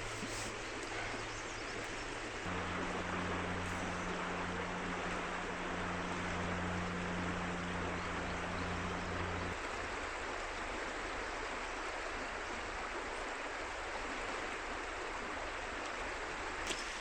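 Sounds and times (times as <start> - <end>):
steady low hum: 0.0 - 9.8
river water rushing: 2.1 - 17.0.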